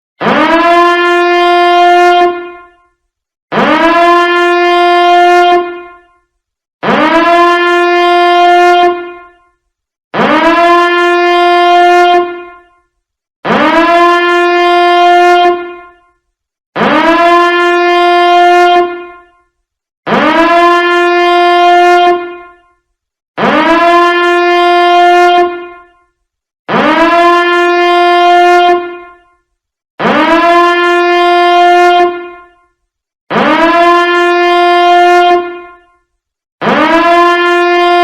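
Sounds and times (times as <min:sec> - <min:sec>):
horn-like alarm tone swooping up: 0:36.7 - 0:38.0.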